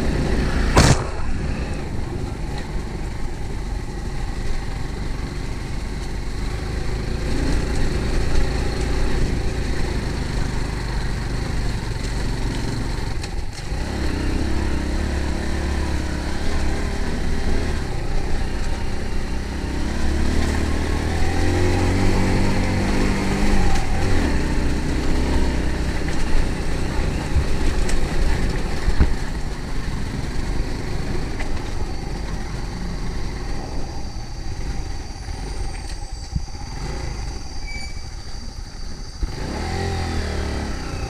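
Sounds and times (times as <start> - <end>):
engine running: 0.0 - 41.0.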